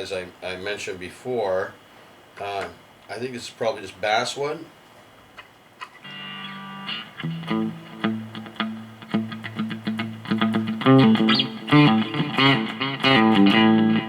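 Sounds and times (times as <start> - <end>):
electric guitar playing: 5.8 - 14.0.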